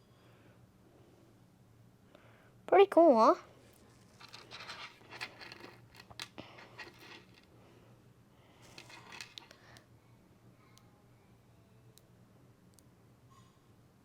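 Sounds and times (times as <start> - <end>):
faint rustling: 3.4 - 7.5.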